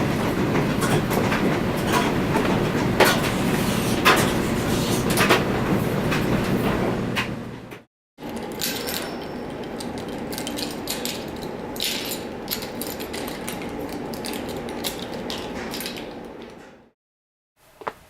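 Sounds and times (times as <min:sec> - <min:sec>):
hard objects clinking: 0:08.2 - 0:16.1.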